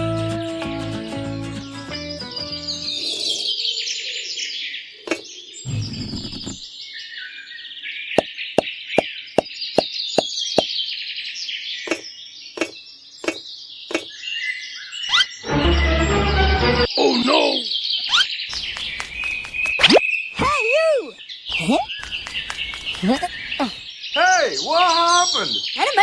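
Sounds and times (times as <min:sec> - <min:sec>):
music: 0:00.0 - 0:03.0, 0:15.4 - 0:16.9
small birds chirping: 0:02.4 - 0:15.4, 0:17.5 - 0:20.4, 0:21.1 - 0:24.8.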